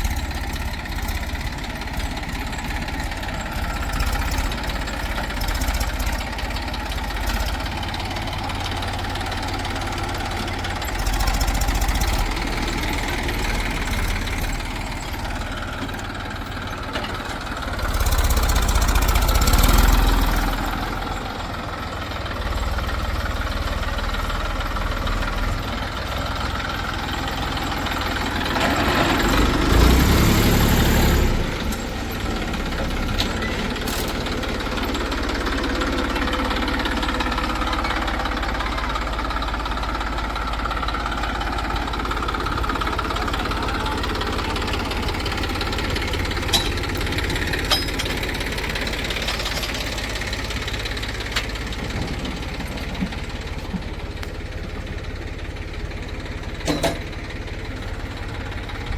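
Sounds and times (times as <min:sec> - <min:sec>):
diesel engines idling: 0:00.0 - 0:58.9
engine revving: 0:17.8 - 0:21.1, 0:28.2 - 0:34.3.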